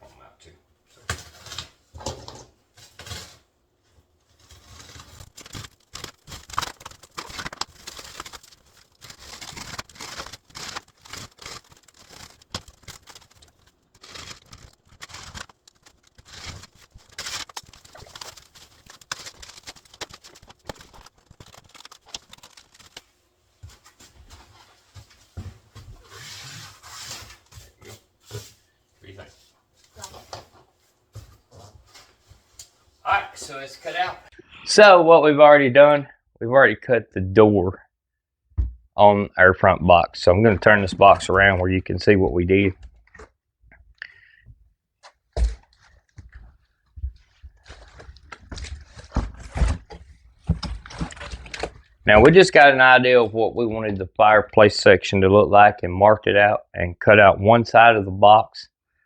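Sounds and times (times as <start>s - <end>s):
styrofoam and cardboard tearing: 1.0s - 3.5s, 4.2s - 29.3s, 47.3s - 52.4s.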